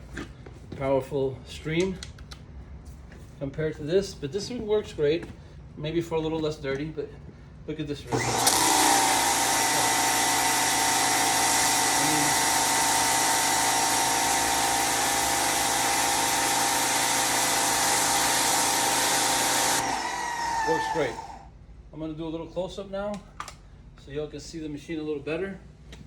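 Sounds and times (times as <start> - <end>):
pressure washer motor whine: 8.1 - 21.5.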